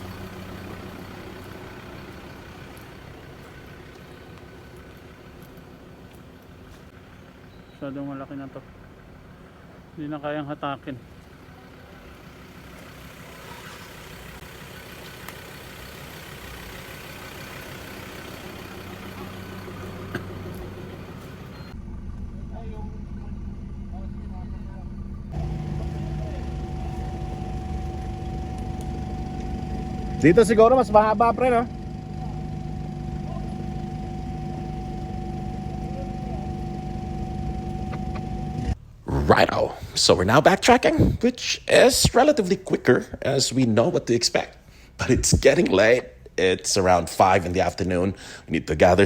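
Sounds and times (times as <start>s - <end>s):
engine running at low revs: 0.0s - 7.6s, 10.9s - 39.0s.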